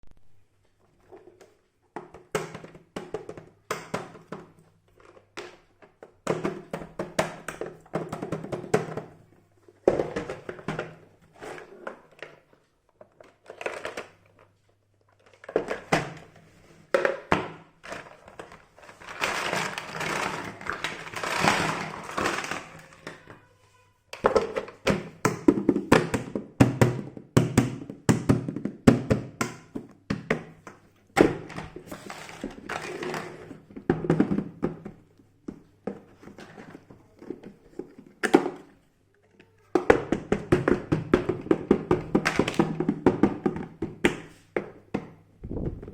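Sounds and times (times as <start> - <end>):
rustling of toy pieces: 17.9 - 23.8.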